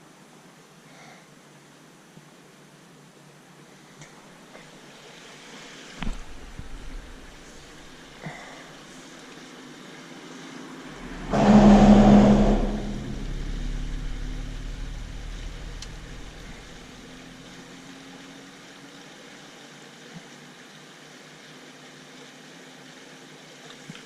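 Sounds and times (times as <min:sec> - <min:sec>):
car passing: 0:10.6 - 0:18.0.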